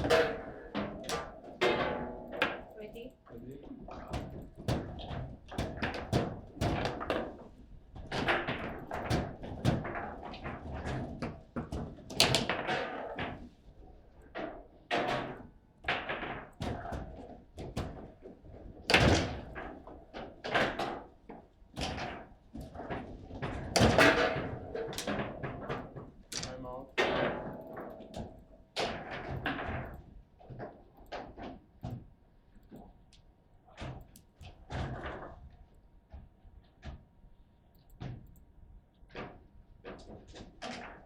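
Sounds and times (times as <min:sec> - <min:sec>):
table football knocks and bangs: 0:00.0 - 0:02.7, 0:04.2 - 0:07.4, 0:23.5 - 0:26.0.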